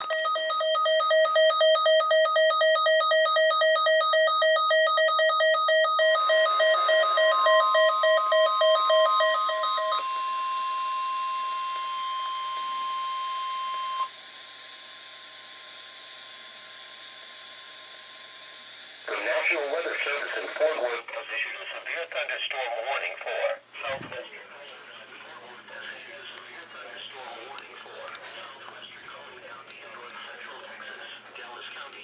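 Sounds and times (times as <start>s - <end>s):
rapidly pulsing alarm beep: 0.0s - 14.5s
steady weather radio alarm tone: 0.0s - 32.0s.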